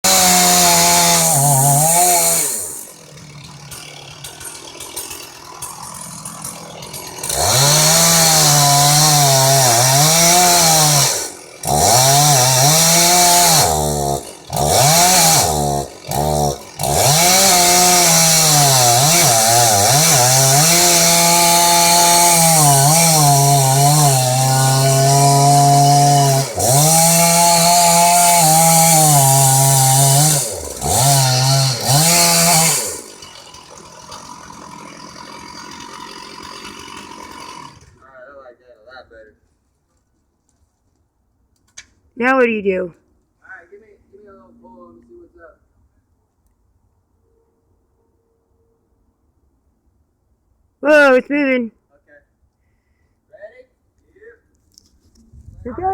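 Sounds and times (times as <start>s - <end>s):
chainsaw engine revving: 0.0s - 38.1s.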